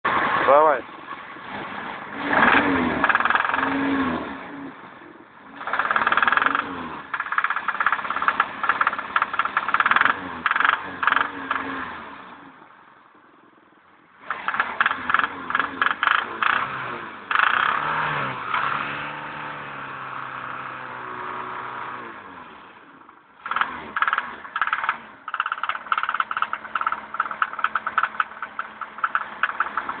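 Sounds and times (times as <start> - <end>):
engine running: 0.1 - 12.8, 14.2 - 30.0
rapid metallic engine knocking: 3.0 - 3.7, 5.6 - 11.6, 14.3 - 16.6, 23.4 - 30.0.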